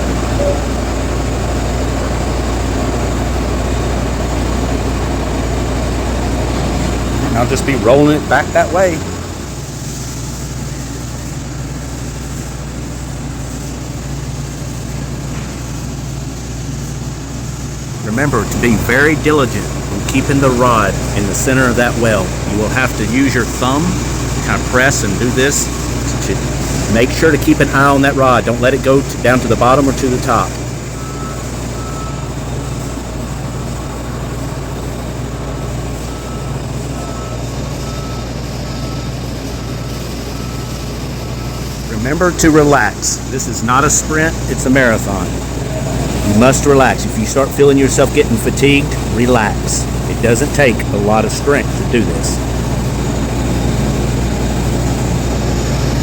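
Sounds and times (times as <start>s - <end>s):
welder electrical hum: 0.0s - 56.0s
welding arc hiss: 0.0s - 56.0s
faint short high beep: 0.4s - 0.8s.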